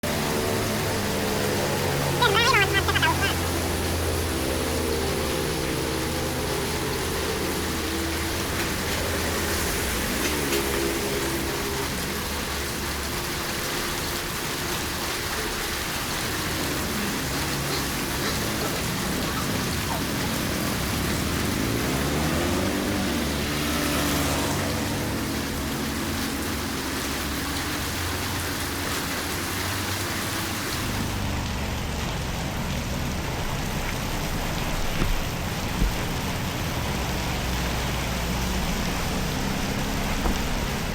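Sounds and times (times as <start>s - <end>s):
heavy rain on wet surface: 0.0s - 40.9s
vehicle passing: 16.3s - 40.9s.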